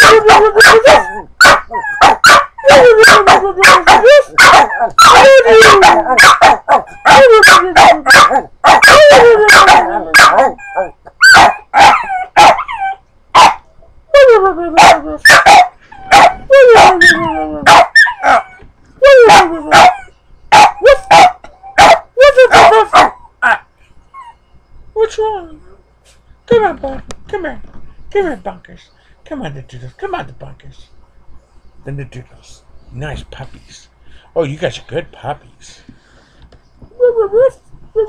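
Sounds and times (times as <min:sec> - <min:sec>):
dogs barking and yowling: 0:00.0 - 0:24.4.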